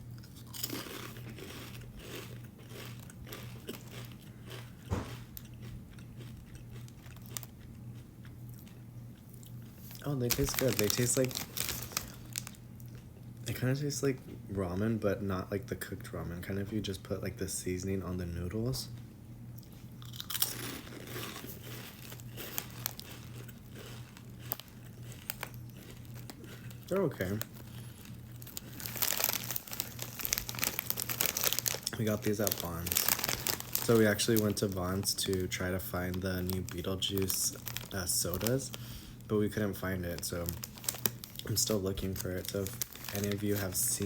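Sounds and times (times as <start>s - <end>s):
person chewing crunchy snacks: 0.0s - 13.1s, 19.6s - 44.0s
steady low hum: 0.0s - 44.0s
sharp crackles: 9.9s - 12.6s, 27.0s - 35.4s, 40.2s - 44.0s.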